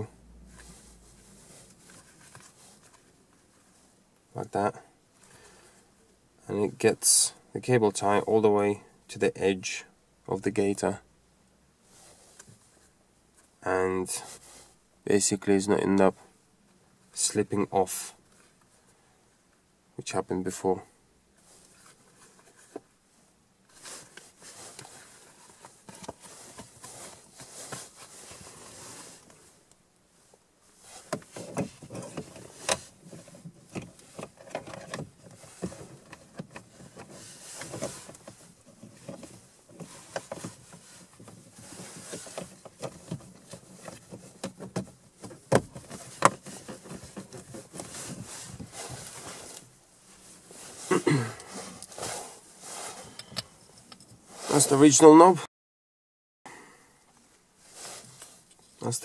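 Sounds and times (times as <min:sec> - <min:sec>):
handling car interior parts: 0:00.0 - 0:06.9, 0:21.3 - 0:55.0.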